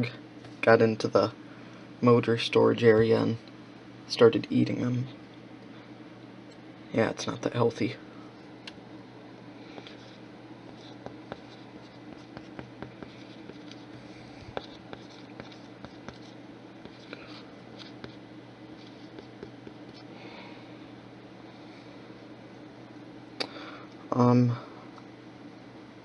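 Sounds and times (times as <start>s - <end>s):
steady low hum: 0.0s - 26.0s
pen scratching on paper: 9.8s - 18.2s, 18.8s - 20.1s.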